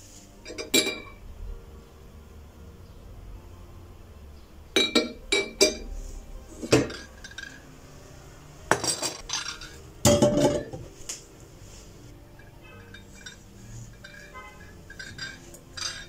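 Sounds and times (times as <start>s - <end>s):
hard objects clinking: 6.6s - 7.7s, 8.7s - 11.0s, 12.4s - 16.0s.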